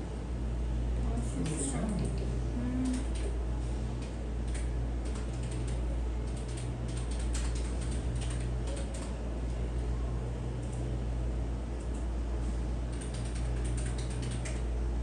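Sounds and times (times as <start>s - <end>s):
low electrical hum: 0.0s - 15.0s
console keys clicking: 4.5s - 9.1s, 12.9s - 14.6s.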